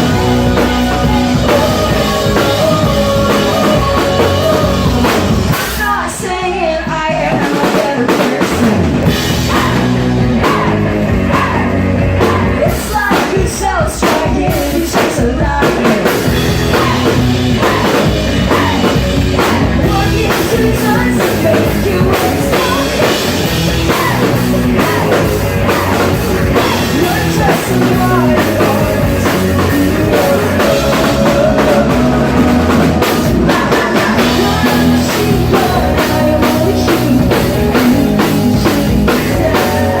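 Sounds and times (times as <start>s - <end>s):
bass guitar: 0.0s - 40.0s
drum kit: 0.0s - 40.0s
electric guitars: 0.0s - 40.0s.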